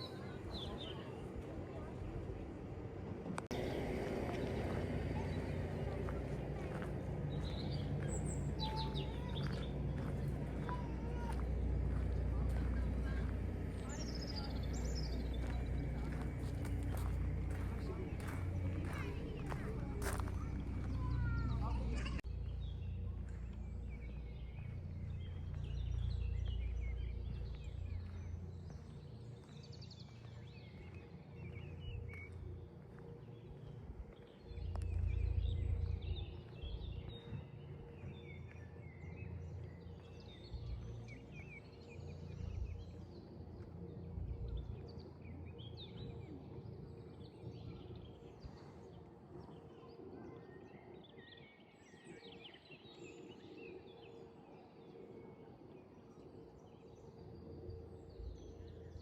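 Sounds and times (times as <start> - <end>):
small birds chirping: 3.5 - 59.0.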